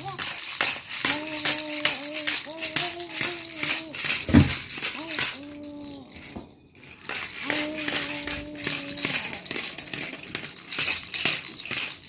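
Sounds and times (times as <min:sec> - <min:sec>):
baby rattle bells jingling: 0:00.0 - 0:12.0
held vocal aah: 0:01.0 - 0:04.2, 0:04.9 - 0:06.4, 0:07.4 - 0:10.0.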